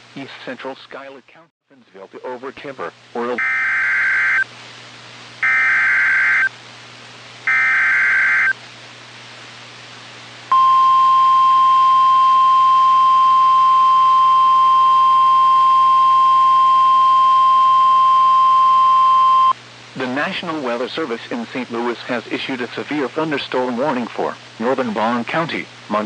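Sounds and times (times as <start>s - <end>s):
steady single-pitch alert tone: 5.4s - 6.5s, 7.5s - 8.6s, 10.5s - 19.6s.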